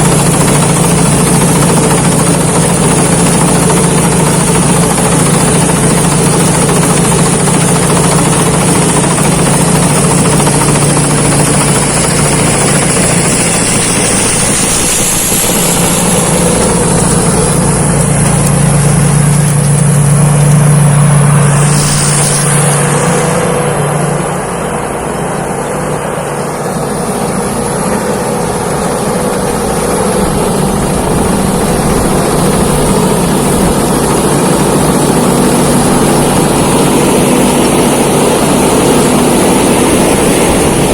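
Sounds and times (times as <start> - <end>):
diesel engine droning: 0.0 - 40.9
harvesting machinery clatter: 0.0 - 40.9.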